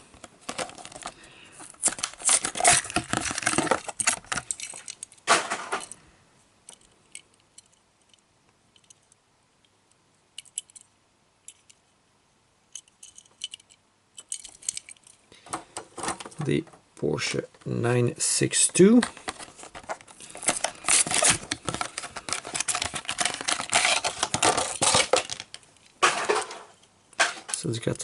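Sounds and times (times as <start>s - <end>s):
toy car and packaging rattling: 0.4s - 6.0s, 18.8s - 28.0s.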